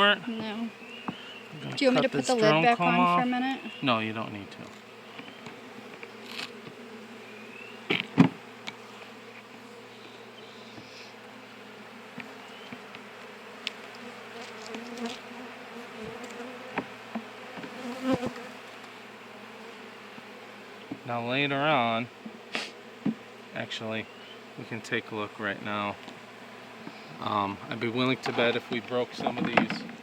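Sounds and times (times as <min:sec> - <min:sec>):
honeybees buzzing: 0:00.0 - 0:30.0.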